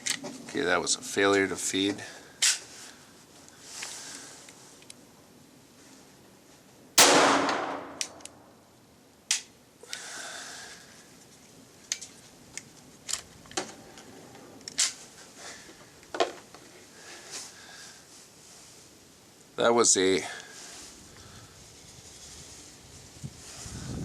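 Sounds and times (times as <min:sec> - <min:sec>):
metallic clicks of pistol action: 0:07.0 - 0:08.4
pistol shot: 0:07.0 - 0:08.4.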